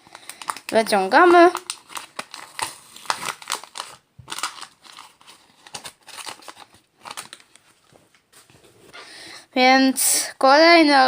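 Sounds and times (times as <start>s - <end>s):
wrapper crinkling: 0.0s - 7.9s.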